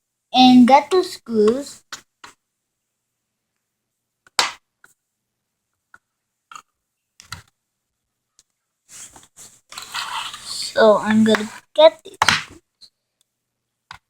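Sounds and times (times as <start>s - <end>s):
clicks and taps of tablet parts: 4.2s - 5.0s, 5.9s - 7.6s
soft handling noise: 8.4s - 11.7s.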